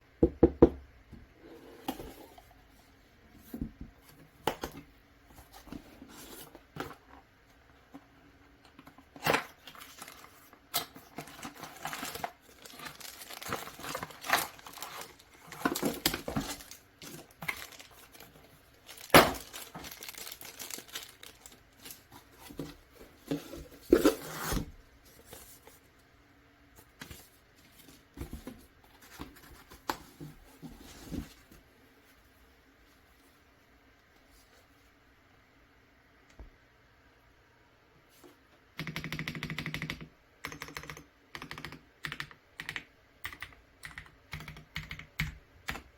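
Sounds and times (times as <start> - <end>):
packaging rustling and tearing: 9.4 - 24.6.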